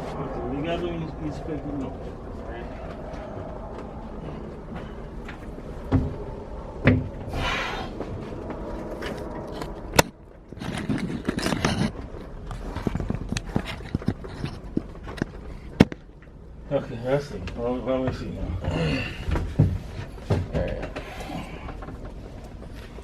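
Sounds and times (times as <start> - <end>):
scraping rush: 0.0 - 15.7.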